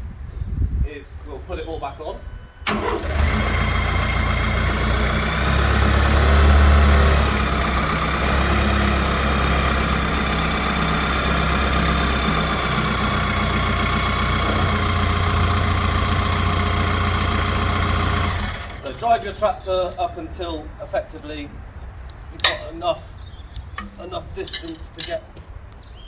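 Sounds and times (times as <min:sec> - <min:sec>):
tractor diesel engine idling: 0:02.6 - 0:20.6.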